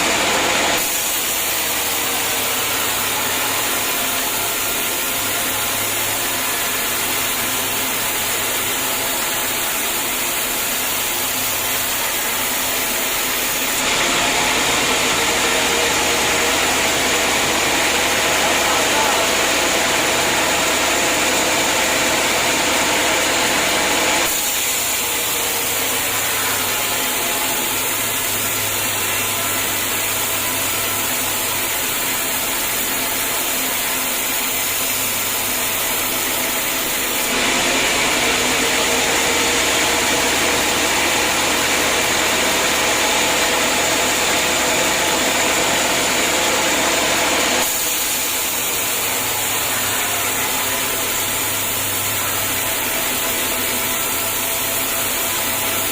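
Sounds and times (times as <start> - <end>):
band saw cutting log: 0.0 - 55.9
sawmill motor: 0.0 - 55.9.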